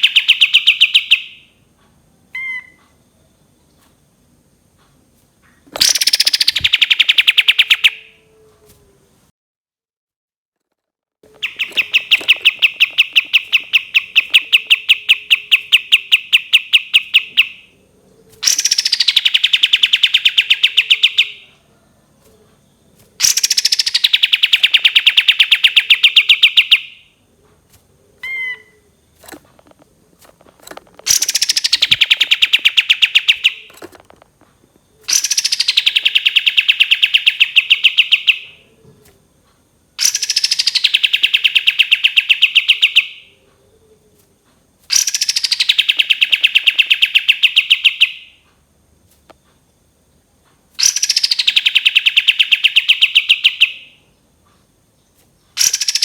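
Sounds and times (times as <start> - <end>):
bird singing rapid trills: 0.0 - 1.5, 5.8 - 8.1, 11.3 - 17.8, 18.4 - 21.5, 23.2 - 27.1, 28.2 - 33.9, 35.0 - 38.6, 40.0 - 43.3, 44.9 - 48.4, 50.8 - 54.1, 55.6 - 56.0.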